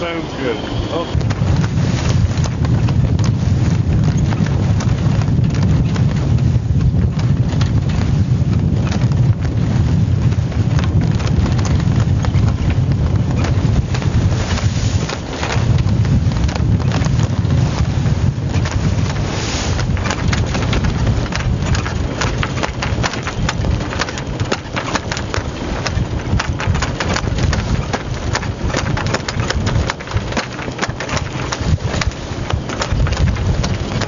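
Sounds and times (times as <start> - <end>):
wind buffeting microphone: 0.0 - 34.0
knocking and rattling: 18.4 - 34.0.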